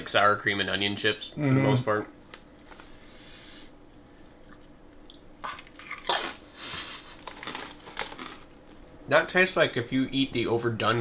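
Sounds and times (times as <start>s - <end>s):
potato chips crunching: 5.4s - 6.5s, 7.1s - 8.8s.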